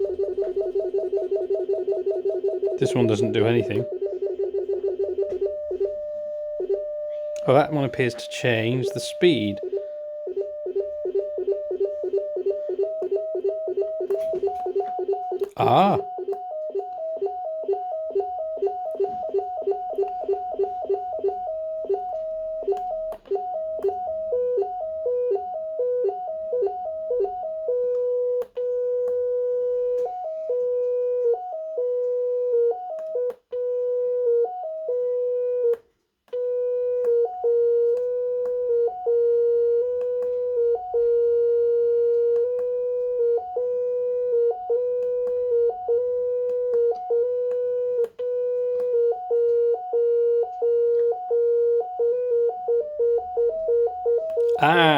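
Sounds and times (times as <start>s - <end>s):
electronic synthesizer beeping: 0.0s - 30.4s.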